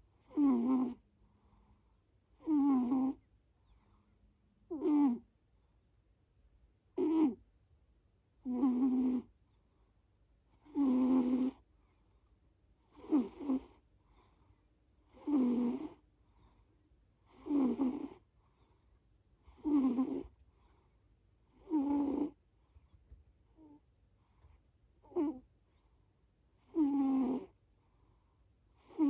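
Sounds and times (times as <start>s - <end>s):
quiet breathing: 0.0s - 2.4s, 3.1s - 4.4s, 11.5s - 15.2s, 15.8s - 29.0s
pet snoring: 0.2s - 1.0s, 2.4s - 3.2s, 4.7s - 5.3s, 7.0s - 7.4s, 8.4s - 9.4s, 10.6s - 11.6s, 12.8s - 14.3s, 15.1s - 16.0s, 17.2s - 18.3s, 19.4s - 20.4s, 21.5s - 22.4s, 25.0s - 25.5s, 26.6s - 27.6s, 28.8s - 29.0s.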